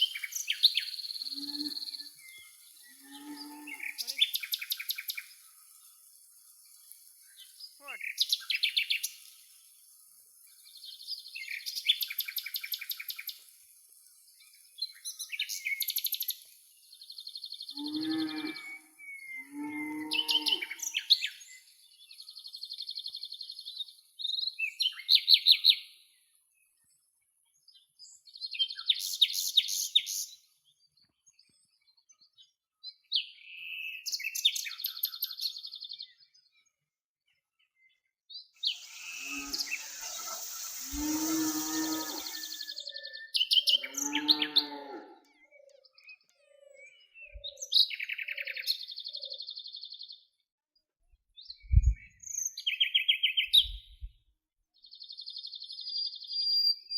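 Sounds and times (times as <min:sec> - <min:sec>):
small birds chirping: 0:00.0 - 0:25.8, 0:26.6 - 0:54.1
cow lowing: 0:39.2 - 0:42.6.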